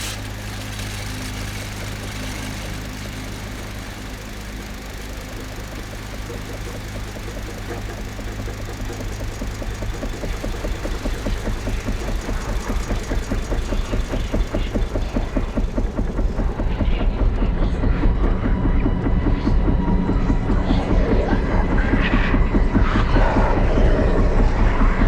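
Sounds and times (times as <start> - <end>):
lawn mower engine running: 0.0 - 18.1.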